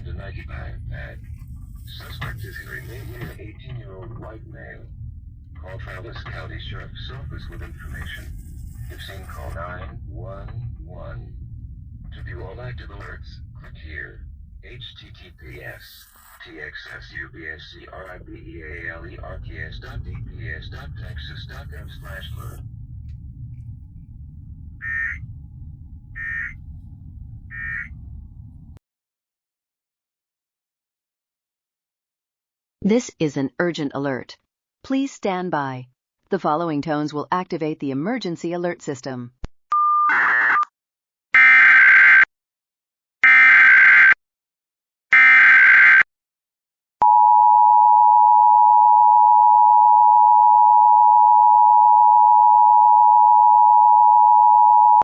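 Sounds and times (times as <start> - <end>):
steady low hum: 0.0 - 28.8
raspy digital squawks: 24.8 - 25.3, 26.1 - 26.6, 27.5 - 28.0.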